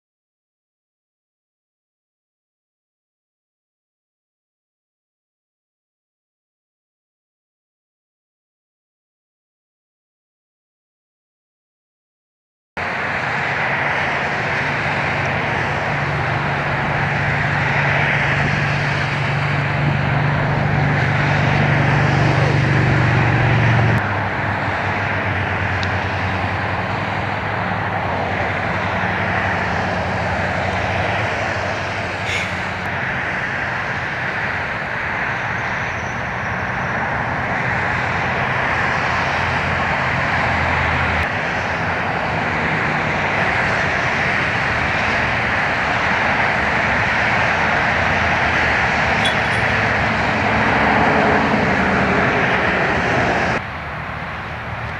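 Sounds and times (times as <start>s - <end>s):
engine-like drone: 12.8s - 54.9s.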